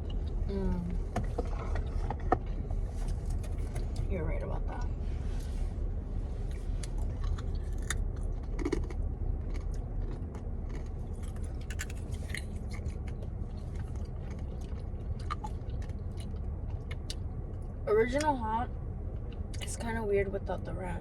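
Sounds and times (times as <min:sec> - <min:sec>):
chewing and biting food: 0:00.0 - 0:04.1, 0:06.4 - 0:17.8
low hum inside car: 0:00.0 - 0:21.0.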